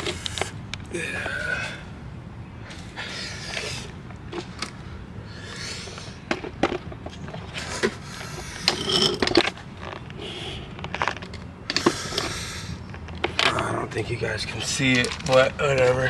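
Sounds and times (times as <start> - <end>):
steady low hum: 0.0 - 16.0
handling clicks and knocks: 6.2 - 16.0.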